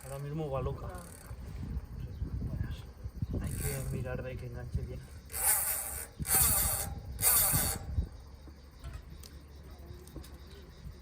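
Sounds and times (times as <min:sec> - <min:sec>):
bicycle freehub ratcheting: 0:00.0 - 0:01.4, 0:03.4 - 0:04.2, 0:05.2 - 0:08.0.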